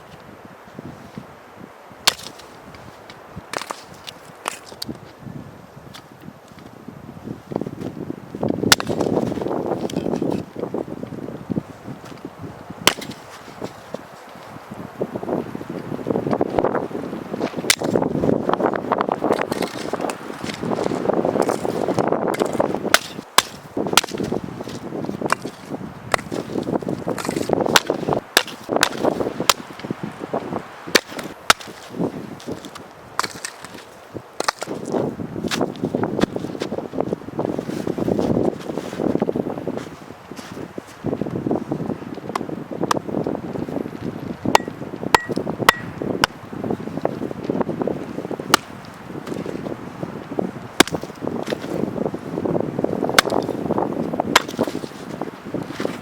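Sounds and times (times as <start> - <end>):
rough rustling: 0.0 - 56.0
wind: 0.0 - 56.0
axe chopping wood: 2.0 - 2.5, 3.5 - 4.8, 8.7 - 10.4, 12.8 - 13.7, 17.6 - 18.0, 19.3 - 29.9, 30.9 - 36.4, 44.5 - 46.4, 48.5 - 49.4, 50.8 - 51.8, 53.1 - 53.5, 54.3 - 55.0
sharp cracks and knocks: 2.1 - 2.5, 12.9 - 13.3, 17.6 - 18.0, 22.4 - 29.9, 30.9 - 36.3, 50.8 - 51.8.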